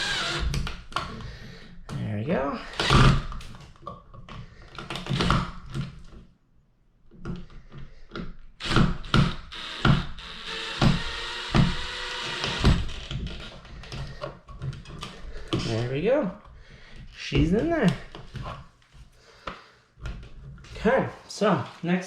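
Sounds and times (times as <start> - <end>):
knocks and thuds on drywall: 7.2 - 15.7.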